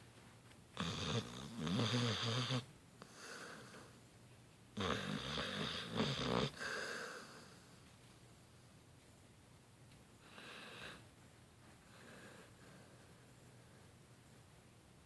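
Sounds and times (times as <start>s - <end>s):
dog snoring: 0.8s - 3.9s, 4.8s - 7.4s.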